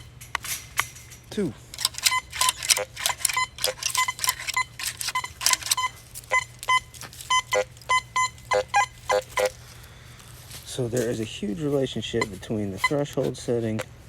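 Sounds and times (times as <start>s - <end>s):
coil brushing noises: 0.0s - 14.0s
metal detector beeps: 1.7s - 9.6s, 12.1s - 13.2s.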